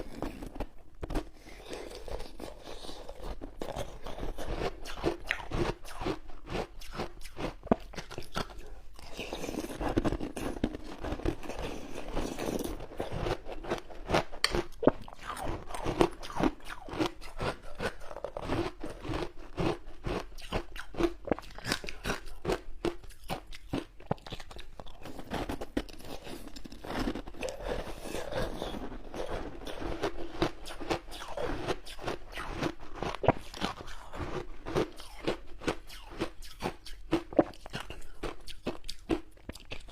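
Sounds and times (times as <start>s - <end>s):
ice crunching while chewed: 0.0s - 39.9s.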